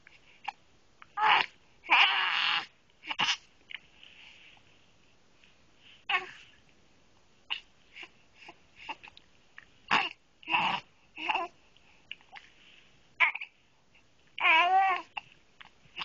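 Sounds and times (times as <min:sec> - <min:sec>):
baby hiccupping: 0:01.2 - 0:03.4, 0:09.9 - 0:11.5.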